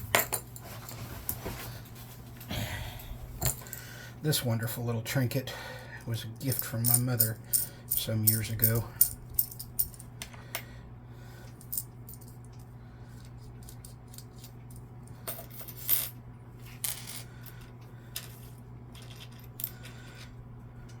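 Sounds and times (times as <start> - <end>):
small metal tools clinking: 6.5 - 10.0, 19.0 - 19.9.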